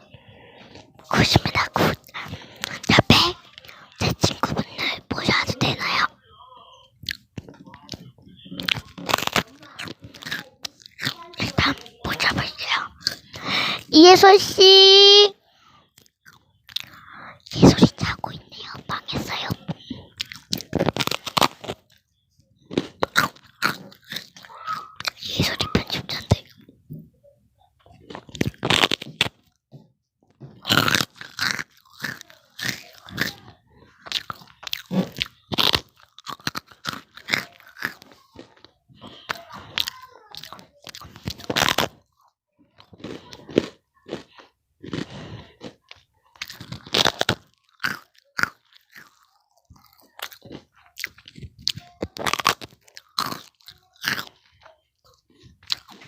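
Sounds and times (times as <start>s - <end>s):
rice crackers crunching: 7.1s - 13.6s, 17.9s - 26.6s, 28.0s - 29.5s, 30.6s - 56.0s.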